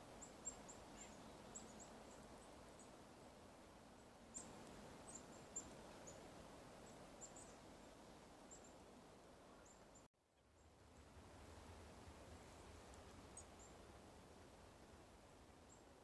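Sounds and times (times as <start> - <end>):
quiet outdoor hiss: 0.0 - 16.0
small birds chirping: 0.1 - 3.0, 4.3 - 8.8.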